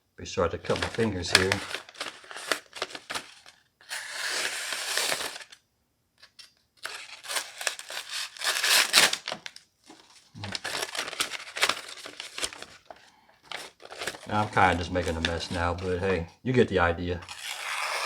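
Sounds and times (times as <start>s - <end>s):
paper rustling: 0.6s - 5.6s, 6.3s - 16.3s
knife slicing paper: 0.7s - 5.6s, 6.8s - 9.4s, 17.3s - 18.0s.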